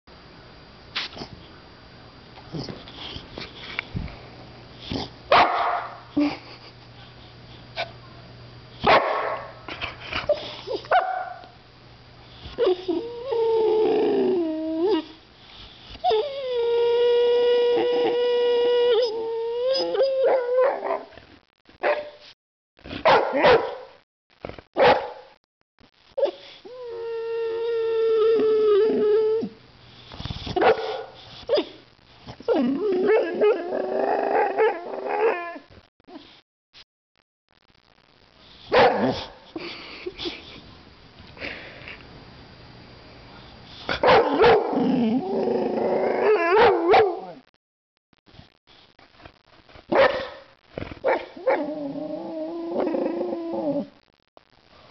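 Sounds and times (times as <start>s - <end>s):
dog barking: 5.3s - 6.0s, 8.8s - 9.6s, 10.9s - 11.5s, 21.8s - 22.2s, 23.0s - 24.0s, 24.8s - 25.3s, 30.6s - 31.8s, 38.7s - 39.3s, 44.0s - 44.8s, 46.5s - 47.4s, 49.9s - 51.6s
dog whining howl: 12.6s - 15.2s, 16.0s - 21.0s, 26.2s - 29.6s, 32.4s - 35.7s, 44.3s - 47.4s, 51.4s - 54.0s
dog yapping: 23.0s - 23.8s, 44.0s - 44.8s, 46.5s - 47.4s, 49.9s - 50.4s.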